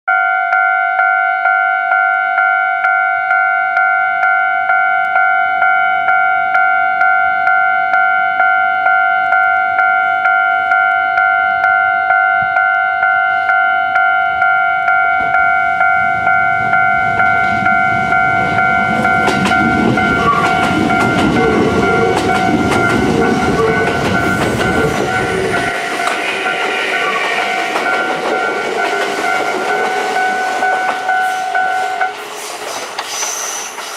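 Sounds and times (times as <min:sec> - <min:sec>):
level crossing warning bell: 0:00.1 - 0:32.4
train rumbling past: 0:12.2 - 0:33.9
wheels clicking over rails: 0:17.2 - 0:33.9.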